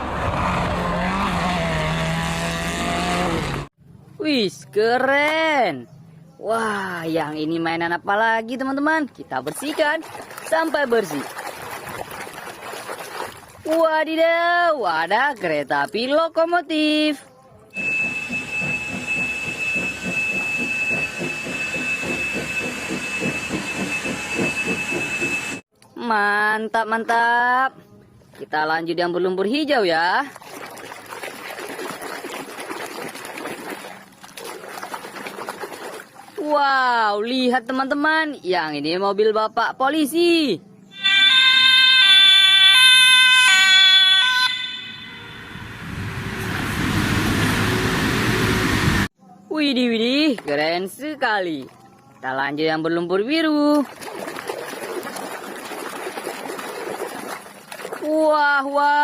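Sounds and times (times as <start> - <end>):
steam locomotive chugging: 17.8 - 25.6
two-tone police siren: 17.8 - 25.6, 41.0 - 46.5
thin high tone: 40.9 - 46.8.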